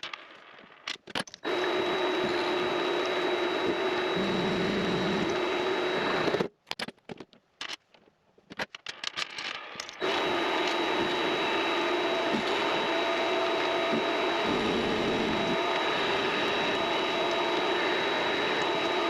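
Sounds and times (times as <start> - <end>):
lathe motor whining: 1.4 - 6.5, 10.0 - 19.0.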